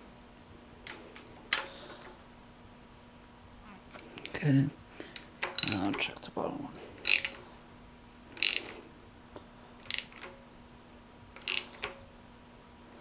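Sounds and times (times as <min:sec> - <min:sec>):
socket ratchet clicking: 0:05.4 - 0:05.9, 0:07.0 - 0:07.4, 0:08.4 - 0:08.7, 0:09.8 - 0:10.3, 0:11.4 - 0:12.0.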